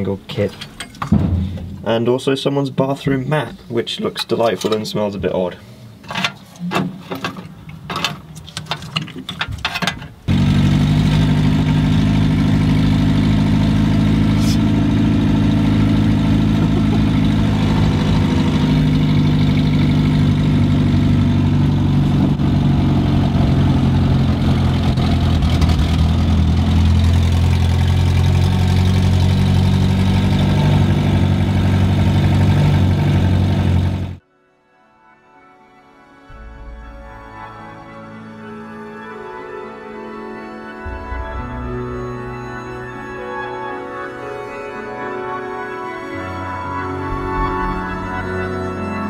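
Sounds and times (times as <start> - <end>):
car engine idling: 10.2 - 34.2.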